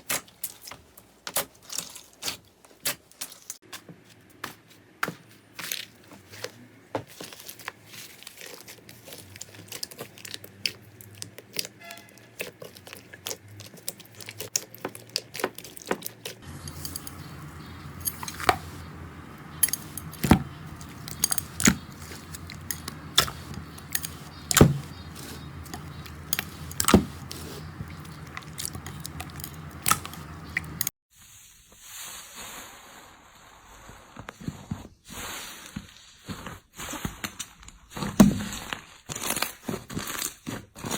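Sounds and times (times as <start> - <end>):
slime squeezing sticky clicks: 16.7 - 30.9.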